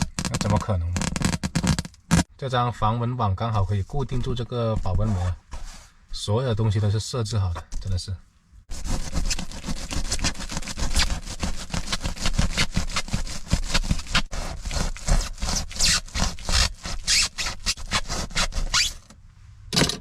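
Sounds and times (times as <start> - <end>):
foam sheet scraping and rubbing: 0.0 - 2.3, 3.6 - 6.0, 8.7 - 19.1.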